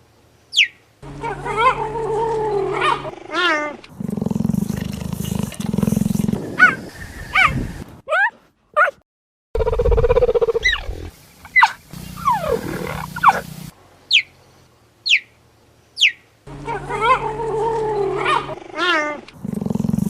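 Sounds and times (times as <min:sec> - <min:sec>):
wild cat calls: 0:01.1 - 0:07.6, 0:09.6 - 0:13.5, 0:16.0 - 0:20.0
wild cat high chirps: 0:09.6 - 0:13.4.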